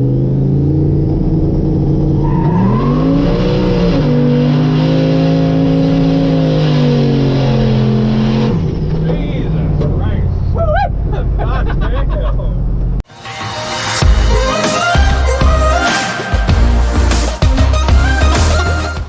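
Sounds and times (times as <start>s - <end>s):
vehicle engine revving: 0.0s - 10.2s, 14.0s - 19.0s.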